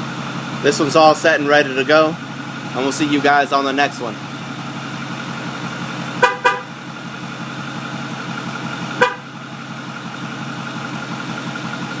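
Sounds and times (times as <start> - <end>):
diesel engine idling: 0.0 - 12.0
truck horn chirps: 6.2 - 6.8, 8.9 - 9.4.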